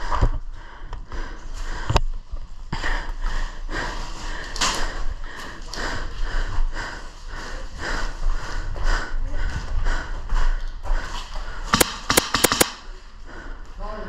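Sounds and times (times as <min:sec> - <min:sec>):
sharp click: 0:11.8 - 0:12.8.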